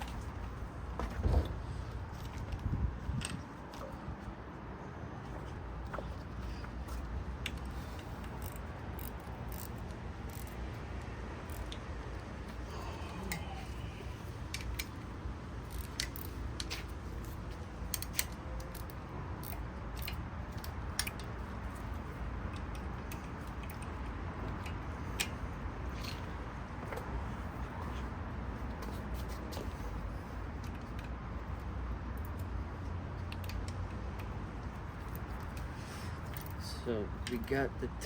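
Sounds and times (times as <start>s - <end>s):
steady low hum: 0.0s - 38.0s
metallic clicks of hand tools: 7.4s - 10.6s, 14.5s - 15.0s, 15.6s - 21.5s, 35.0s - 36.6s.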